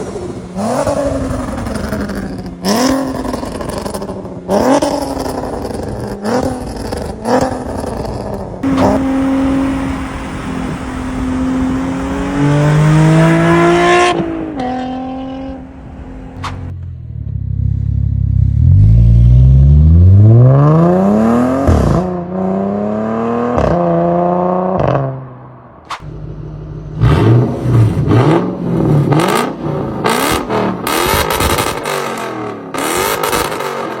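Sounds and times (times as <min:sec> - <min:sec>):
car engine accelerating: 0:00.0 - 0:34.0.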